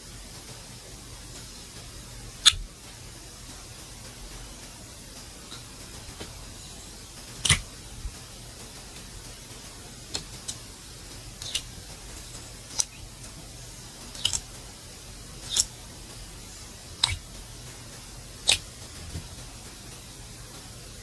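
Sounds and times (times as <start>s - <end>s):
faint steady hum: 0.0s - 21.0s
slime popping clicks: 7.4s - 7.6s.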